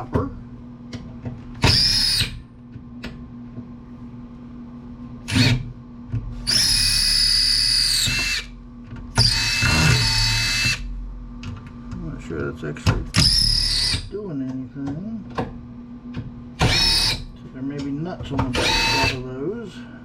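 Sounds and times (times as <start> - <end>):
power drill whining: 1.6 - 2.4, 5.3 - 5.6, 6.5 - 8.5, 9.2 - 10.8, 13.2 - 14.0, 16.6 - 17.3, 18.5 - 19.2.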